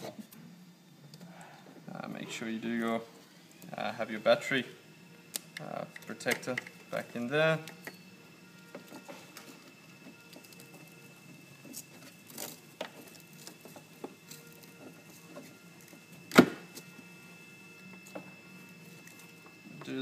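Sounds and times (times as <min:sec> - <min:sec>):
parts tapping and scraping: 0:05.4 - 0:07.0, 0:07.6 - 0:10.9, 0:11.6 - 0:17.0.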